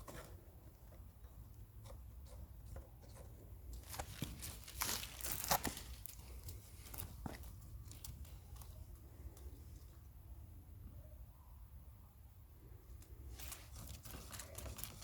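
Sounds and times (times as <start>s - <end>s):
crinkling and rustling: 0.0s - 10.0s, 13.0s - 15.0s.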